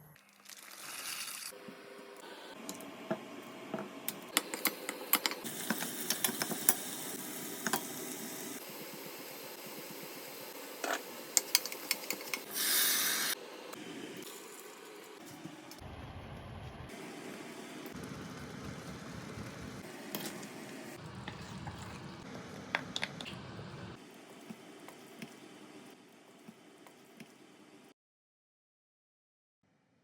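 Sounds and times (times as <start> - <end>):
utensils clicking and tapping: 4.1 - 6.8, 10.8 - 12.5, 22.7 - 23.4.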